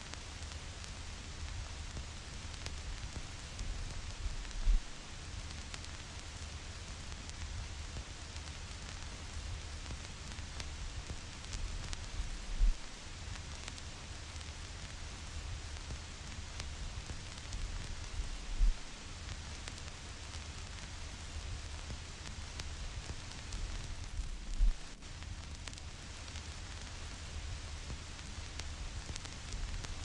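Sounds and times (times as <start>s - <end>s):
vinyl crackle and hiss: 0.0s - 30.0s
low thumps: 4.1s - 4.9s, 18.2s - 18.9s.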